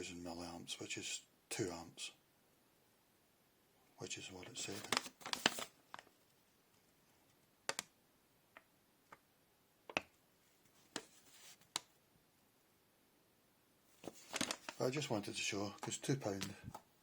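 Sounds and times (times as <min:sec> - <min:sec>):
plastic clicks and taps: 0:07.7 - 0:07.9, 0:09.9 - 0:10.2.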